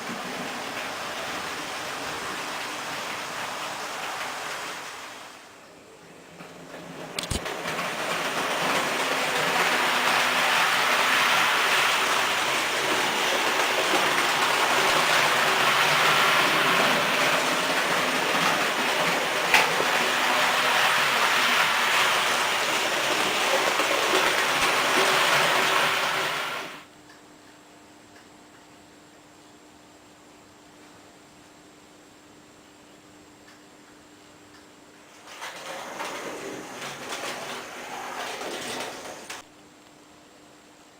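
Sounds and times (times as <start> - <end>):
model train rolling on track: 0.0 - 5.3, 6.4 - 26.8, 35.2 - 39.4.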